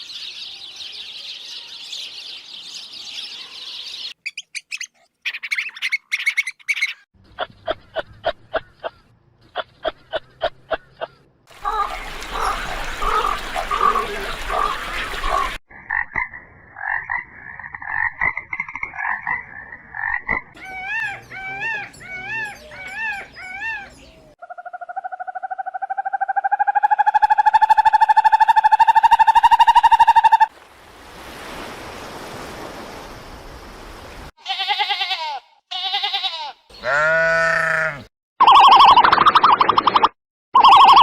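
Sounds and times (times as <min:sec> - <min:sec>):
frogs croaking: 0:09.6 - 0:23.4.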